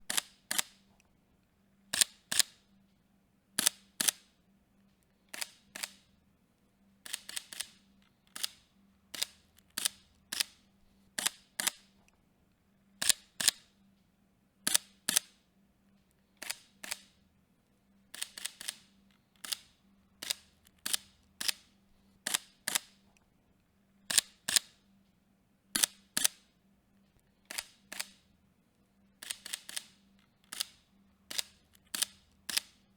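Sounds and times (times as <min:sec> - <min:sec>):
camera shutter clicking: 0:00.0 - 0:00.8, 0:02.0 - 0:02.6, 0:03.6 - 0:04.2, 0:05.3 - 0:06.0, 0:07.1 - 0:07.8, 0:09.2 - 0:10.6, 0:11.2 - 0:11.8, 0:13.0 - 0:13.6, 0:14.7 - 0:15.3, 0:16.4 - 0:17.1, 0:18.2 - 0:18.8, 0:19.4 - 0:21.6, 0:22.3 - 0:22.9, 0:24.1 - 0:24.7, 0:25.8 - 0:26.4, 0:27.5 - 0:28.2, 0:29.2 - 0:32.8.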